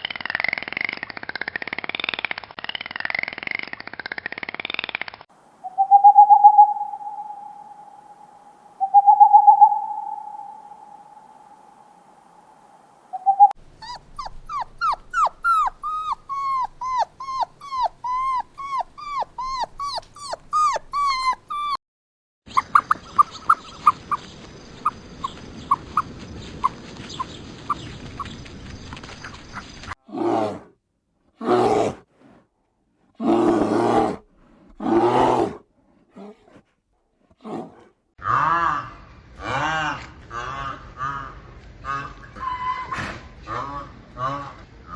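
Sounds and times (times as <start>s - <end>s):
loud animal calls: 13.1s - 21.8s.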